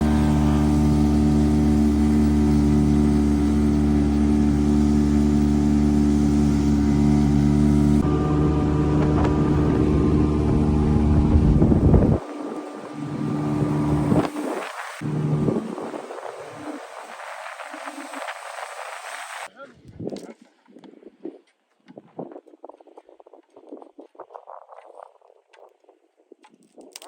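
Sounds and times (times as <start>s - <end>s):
engine running: 0.0s - 19.5s.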